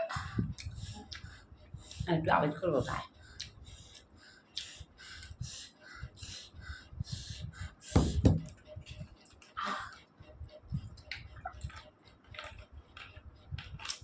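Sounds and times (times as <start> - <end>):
wet chewing and lip-smacking: 0.5 - 2.0, 3.3 - 5.4, 10.8 - 14.0.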